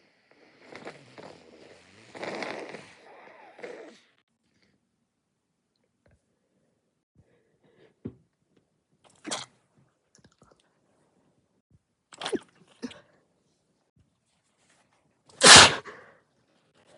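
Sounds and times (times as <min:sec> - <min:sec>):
person stifling sneezes: 0:09.2 - 0:09.5, 0:15.4 - 0:16.1.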